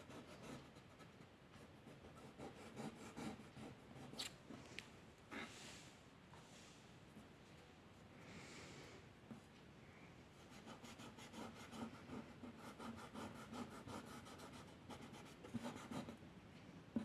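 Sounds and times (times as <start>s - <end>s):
pencil scratching on paper: 1.8s - 4.2s, 10.5s - 16.2s.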